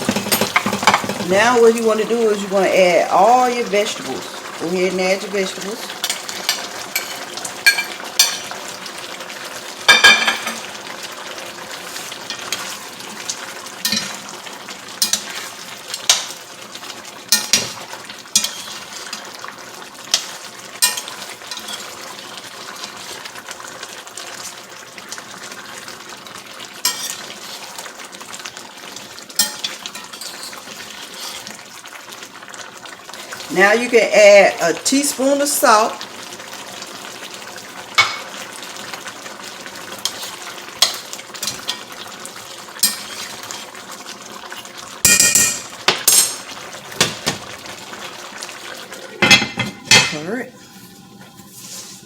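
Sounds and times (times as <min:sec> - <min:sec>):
utensil clanking against pot: 0:00.0 - 0:01.6, 0:17.4 - 0:17.8
meat sizzling in a pot: 0:00.0 - 0:52.0.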